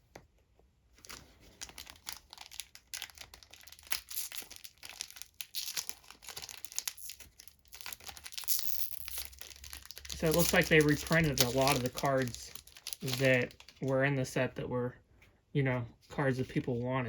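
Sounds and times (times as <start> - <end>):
wrapper tearing and crinkling: 1.0 - 14.0.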